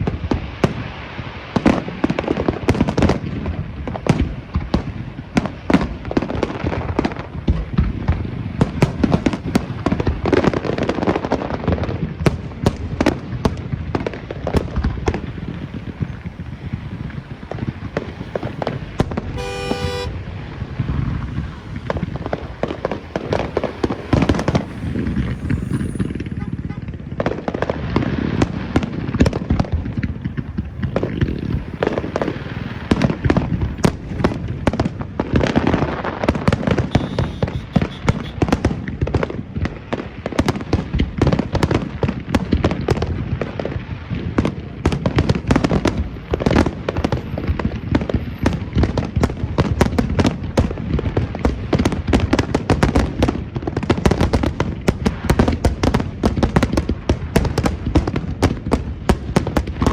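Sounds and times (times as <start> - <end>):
fireworks booming and crackling: 0.0 - 59.9.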